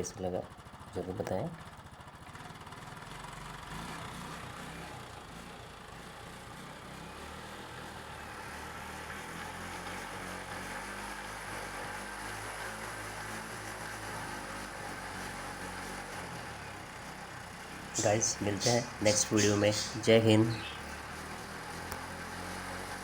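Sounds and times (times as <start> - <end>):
moped engine running: 0.0 - 1.0, 1.6 - 6.6.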